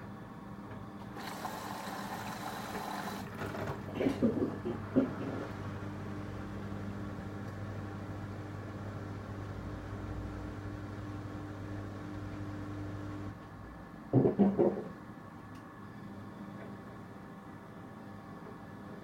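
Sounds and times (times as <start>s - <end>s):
washer dryer buzzing hum: 0.6s - 13.4s.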